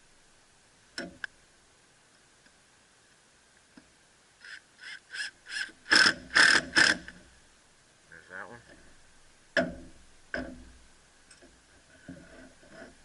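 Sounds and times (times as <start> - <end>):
clicks of screw and drill: 4.4 - 7.2
drill driving screw into plywood: 4.4 - 7.2.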